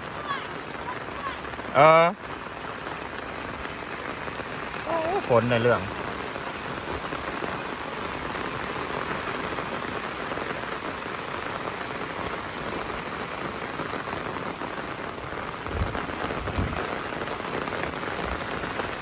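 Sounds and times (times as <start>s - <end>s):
rain falling steadily: 0.0s - 19.0s.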